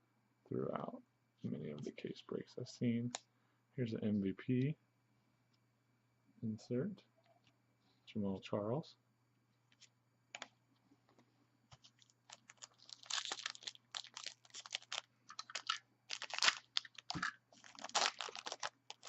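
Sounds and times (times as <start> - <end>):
cards rustling: 11.7 - 19.0
wrapper crinkling and tearing: 11.8 - 19.0.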